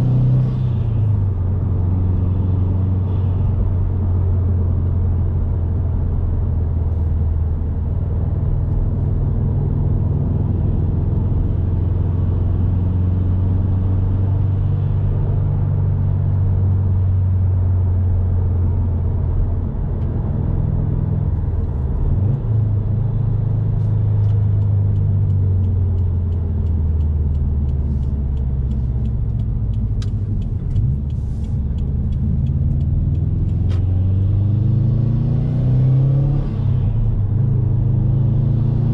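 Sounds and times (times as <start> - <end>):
car engine running: 22.6 - 34.8.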